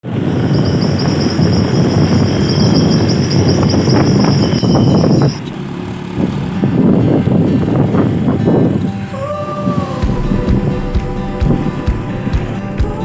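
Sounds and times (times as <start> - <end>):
insect trill: 0.2 - 8.2.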